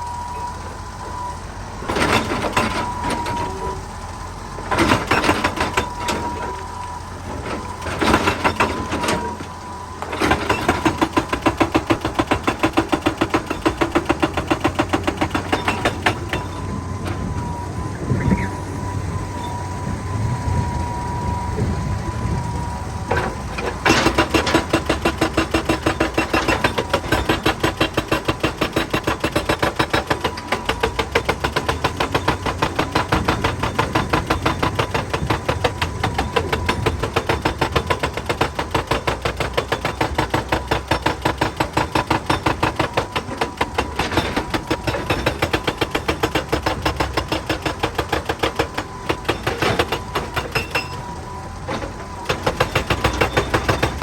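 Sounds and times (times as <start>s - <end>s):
machine engine running: 0.0s - 54.0s
hydraulic breaker hammering rock: 1.8s - 3.8s, 4.6s - 17.5s, 23.1s - 54.0s
steady whine: 15.8s - 24.6s.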